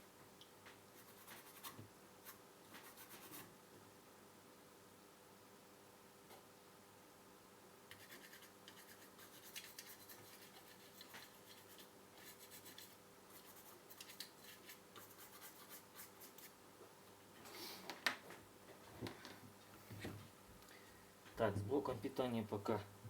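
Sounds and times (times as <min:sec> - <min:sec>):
faint scratching and rubbing: 0:07.9 - 0:16.6.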